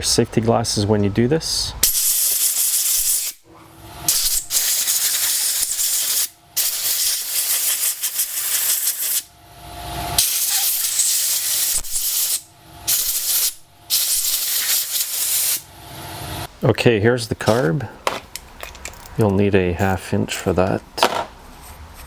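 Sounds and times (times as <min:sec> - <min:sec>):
compressed air blow gun hissing: 0:01.8 - 0:09.3, 0:10.2 - 0:16.5.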